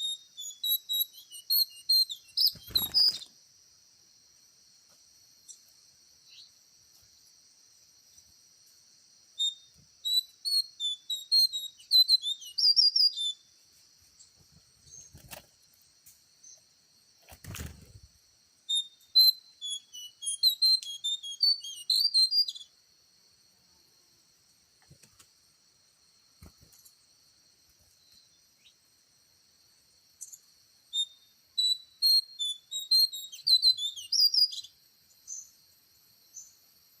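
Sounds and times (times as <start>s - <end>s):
songbird chirping and warbling: 0.0s - 3.4s, 5.4s - 6.6s, 9.4s - 15.5s, 18.6s - 22.7s, 30.2s - 35.6s
high insect whine: 0.0s - 37.0s.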